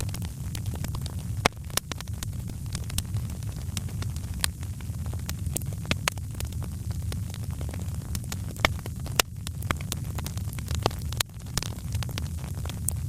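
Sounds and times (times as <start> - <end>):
wood fire crackling: 0.0 - 13.0.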